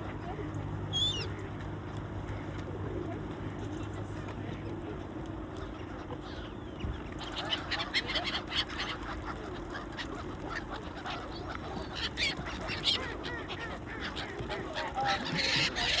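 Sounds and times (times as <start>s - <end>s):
waterfowl calling: 7.2s - 16.0s.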